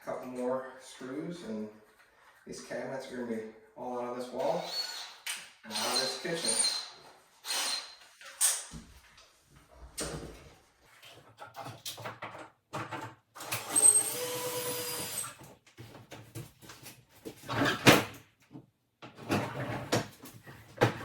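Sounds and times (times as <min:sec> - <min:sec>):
power drill running: 0:05.7 - 0:08.0, 0:13.5 - 0:15.3.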